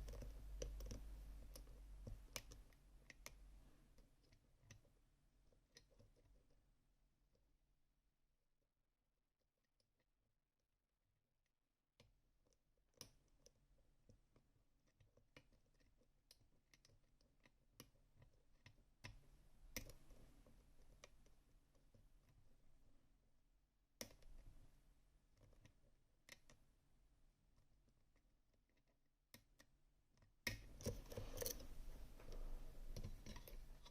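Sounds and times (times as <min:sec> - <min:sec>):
lock picking clicks and scraping: 0:30.5 - 0:33.9.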